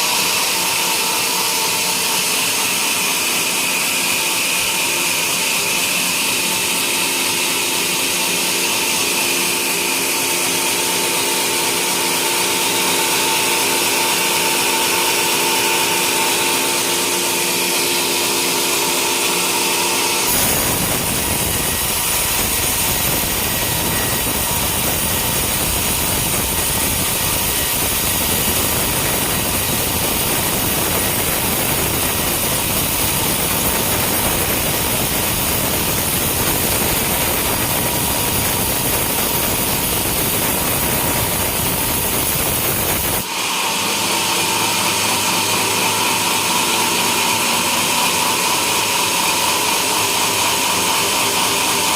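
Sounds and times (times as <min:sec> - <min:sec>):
sawmill sawing log: 0:00.0 - 0:51.9
high hiss: 0:20.3 - 0:43.2.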